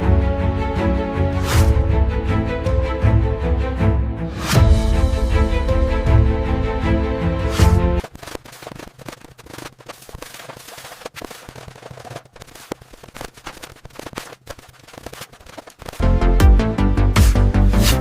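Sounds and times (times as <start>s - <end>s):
music: 0.0s - 8.0s, 16.0s - 18.0s
dense crackling and popping: 8.0s - 16.4s.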